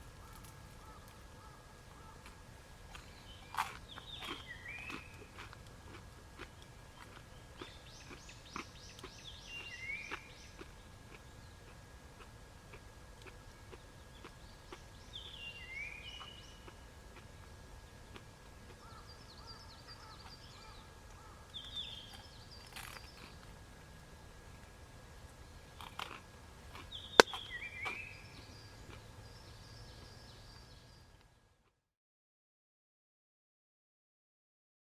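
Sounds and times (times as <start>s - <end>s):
bird calling: 0.0s - 2.3s.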